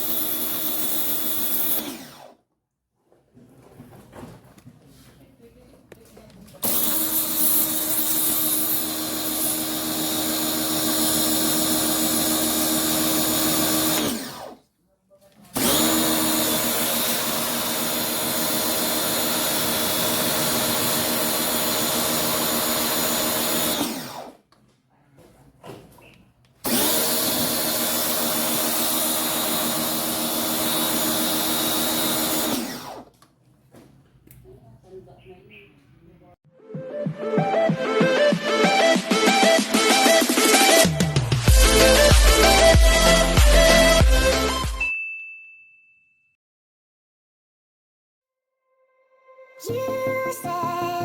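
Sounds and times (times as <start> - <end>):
pressure washer motor humming: 0.0 - 2.3, 6.6 - 14.6, 15.6 - 24.3, 26.6 - 33.0, 38.4 - 44.6.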